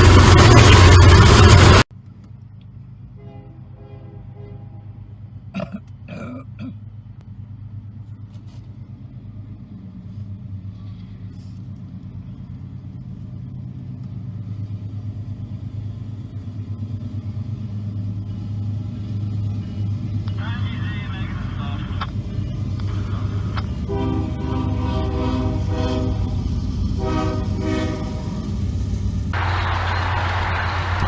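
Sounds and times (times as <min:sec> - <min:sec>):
diesel locomotive engine rumbling: 0:00.0 - 0:31.0.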